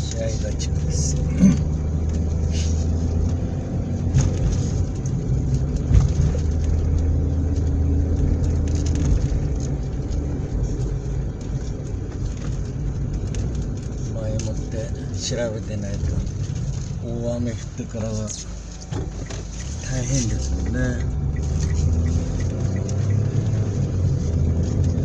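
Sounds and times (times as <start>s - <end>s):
car engine and road rumble: 0.0s - 25.0s.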